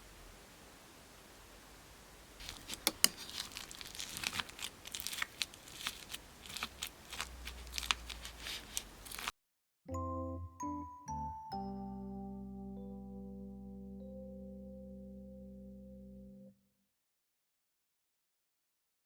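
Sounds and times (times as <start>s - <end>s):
slime squished by hand crackling: 2.4s - 9.3s.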